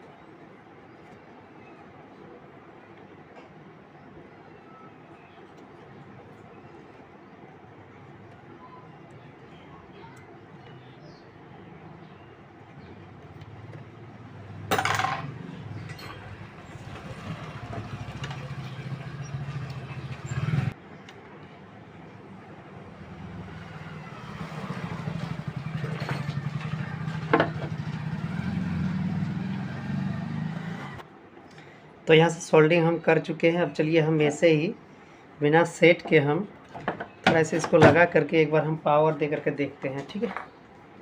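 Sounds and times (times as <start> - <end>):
low motor rumble: 12.9 - 20.8
knocks and clinks at a bench: 14.6 - 16.4.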